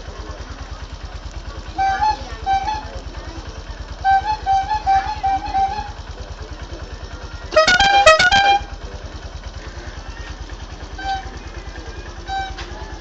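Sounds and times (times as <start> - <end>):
engine idling: 0.0 - 13.0
musical multi-tone vehicle horn: 1.8 - 3.0, 4.0 - 6.1, 7.5 - 8.9, 10.9 - 11.6, 12.2 - 12.7.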